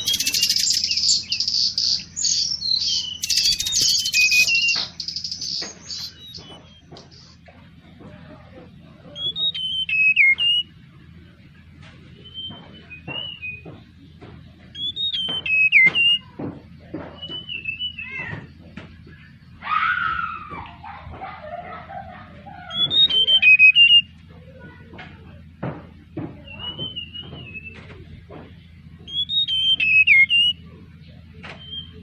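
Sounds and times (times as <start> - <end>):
bird whistled song phrases: 0.0 - 7.4, 9.1 - 10.8, 12.2 - 13.7, 14.7 - 16.3, 17.2 - 18.5, 22.7 - 24.1, 26.4 - 27.9, 29.1 - 30.7, 31.5 - 32.0.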